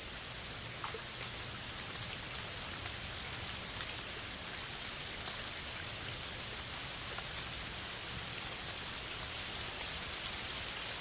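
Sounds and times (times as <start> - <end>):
raindrops landing: 0.0 - 11.0
rainfall hiss: 0.0 - 11.0.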